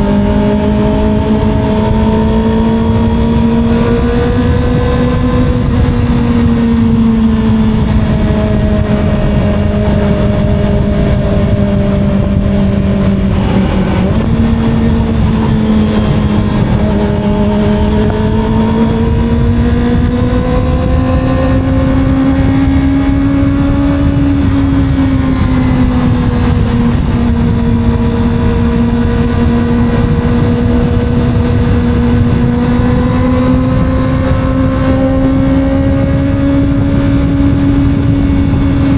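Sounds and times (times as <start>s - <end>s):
motorcycle engine running: 0.0s - 38.9s
road rumble: 0.0s - 38.9s
wind noise: 0.0s - 38.9s.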